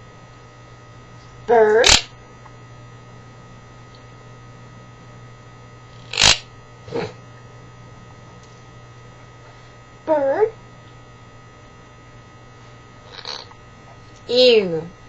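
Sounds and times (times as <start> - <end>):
low electrical hum: 0.0 - 15.0
short sharp noises: 6.0 - 7.0.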